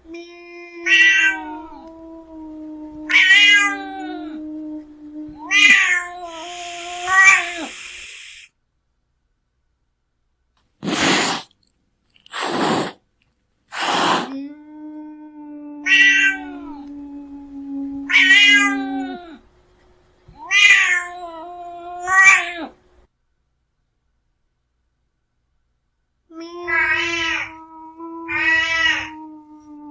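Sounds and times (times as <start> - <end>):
cat growling and yowling: 0.0 - 8.5, 13.7 - 19.5, 20.3 - 22.8, 26.3 - 29.9
cat hissing: 0.9 - 8.5, 10.8 - 11.6, 12.2 - 13.0, 13.7 - 14.4, 15.8 - 19.5, 28.3 - 29.9.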